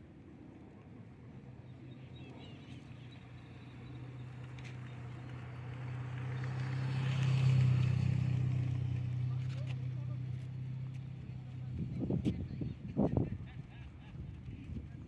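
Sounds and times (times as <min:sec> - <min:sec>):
vehicle engine passing by: 0:03.6 - 0:13.2.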